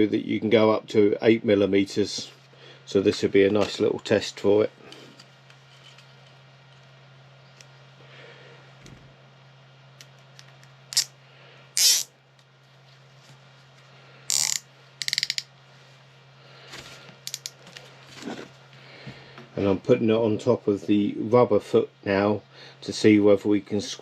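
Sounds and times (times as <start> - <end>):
cable tie ratchet clicks: 14.3 - 15.5, 17.3 - 17.6.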